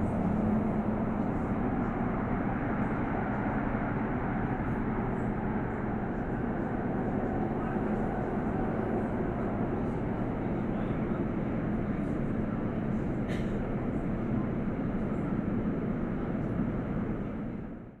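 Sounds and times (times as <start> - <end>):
train running rumble with hiss: 0.0 - 17.9.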